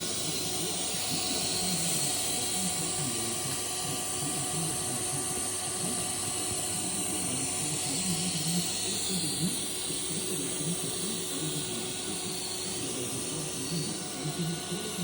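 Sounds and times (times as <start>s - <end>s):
welding arc hiss: 0.0s - 15.0s.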